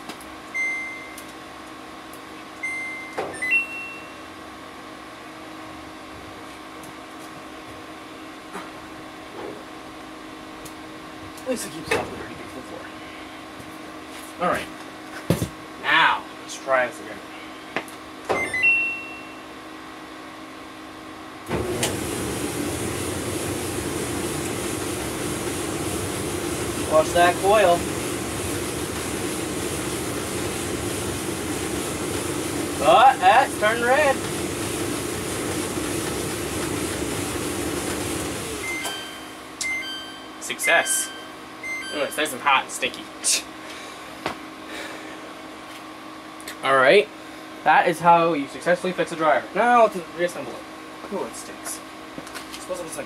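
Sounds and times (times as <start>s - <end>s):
clothes dryer running: 0.0s - 53.0s
control panel beeps: 0.6s - 1.3s, 2.6s - 4.2s, 18.4s - 19.4s, 38.6s - 42.4s
two-note chime: 2.6s - 4.2s, 38.7s - 42.4s
steady hum: 38.4s - 45.6s.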